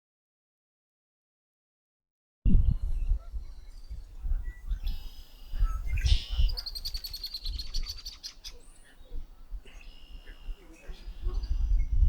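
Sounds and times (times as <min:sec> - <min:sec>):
osprey chirping: 0:03.7 - 0:12.0.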